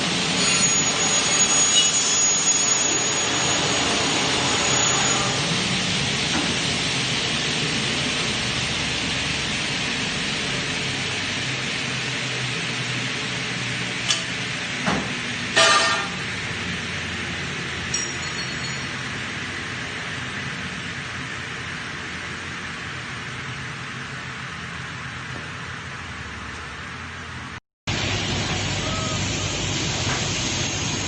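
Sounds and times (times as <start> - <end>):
rushing mechanical noise: 0.0 - 31.0
loud ringing clank: 15.5 - 16.3, 17.9 - 19.2.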